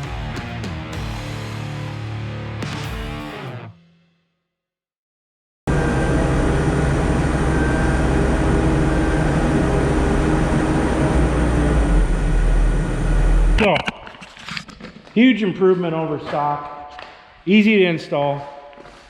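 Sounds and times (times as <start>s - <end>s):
engine running with low hum: 5.7s - 13.6s.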